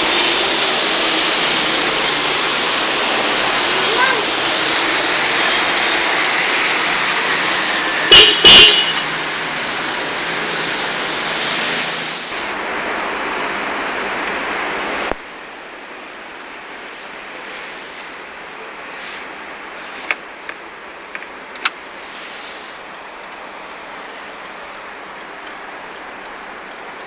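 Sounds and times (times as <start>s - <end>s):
steady hiss: 0.0s - 27.0s
motorcycle horn toots: 8.1s - 9.1s.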